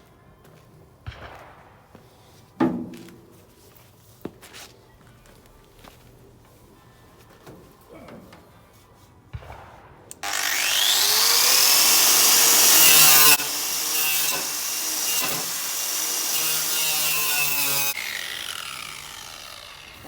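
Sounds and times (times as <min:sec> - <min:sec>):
electric grinder on metal: 0:10.2 - 0:20.0.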